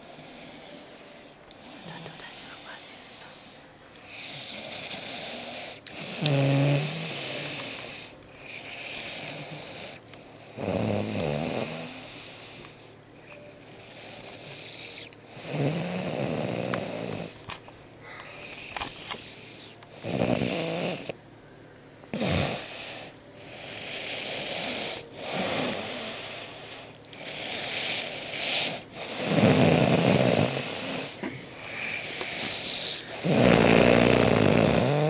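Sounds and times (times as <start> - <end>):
man snoring: 4.1 - 8.1, 8.8 - 12.6, 14.0 - 17.4, 20.0 - 21.1, 22.1 - 26.6, 27.2 - 35.0.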